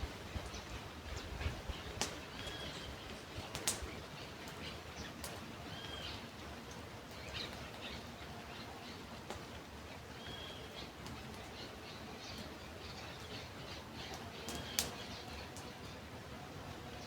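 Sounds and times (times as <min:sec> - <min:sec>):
low background hiss: 0:00.0 - 0:17.0
birds chirping: 0:10.1 - 0:16.0.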